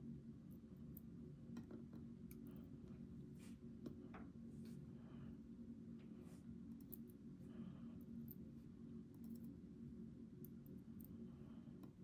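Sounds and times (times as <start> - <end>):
low steady hum: 0.0 - 12.0
soft rustle of small parts: 0.4 - 9.6
faint clicks of lock parts: 9.1 - 9.5.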